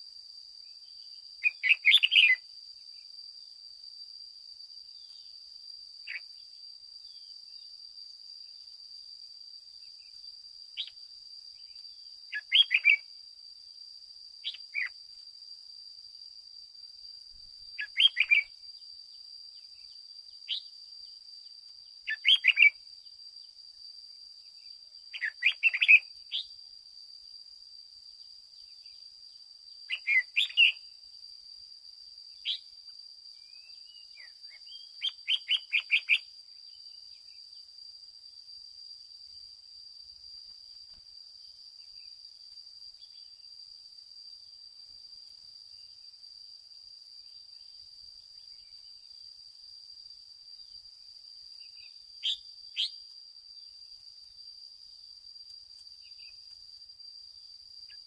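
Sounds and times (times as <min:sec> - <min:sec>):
bird chirping calls: 0:01.4 - 0:02.4, 0:12.3 - 0:13.0, 0:17.8 - 0:18.5, 0:22.1 - 0:22.8, 0:25.2 - 0:26.5, 0:29.9 - 0:30.8, 0:33.5 - 0:36.2.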